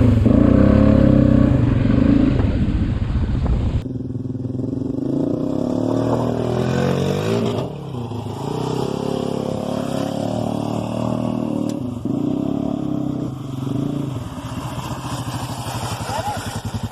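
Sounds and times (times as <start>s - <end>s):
atv engine revving: 0.0s - 2.8s, 3.9s - 16.9s.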